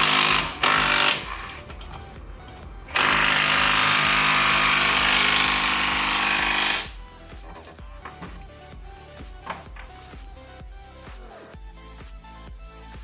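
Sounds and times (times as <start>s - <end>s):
power tool running: 0.0s - 2.1s, 2.8s - 7.0s.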